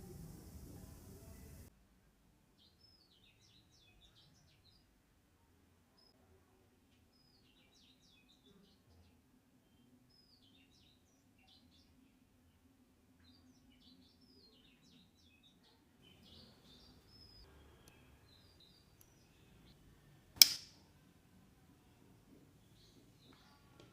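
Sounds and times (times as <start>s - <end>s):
faint bird chirps: 2.6s - 4.9s, 5.9s - 20.2s
sharp loud snap: 20.4s - 20.8s.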